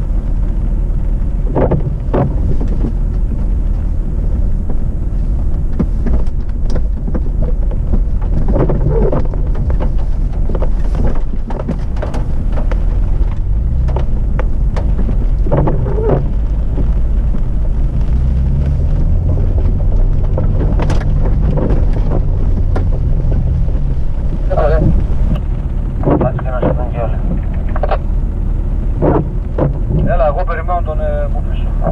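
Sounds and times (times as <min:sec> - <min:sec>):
off-road vehicle rumbling: 0:00.0 - 0:31.9
knocks and clatters: 0:01.4 - 0:04.8, 0:05.5 - 0:28.2, 0:28.9 - 0:30.5.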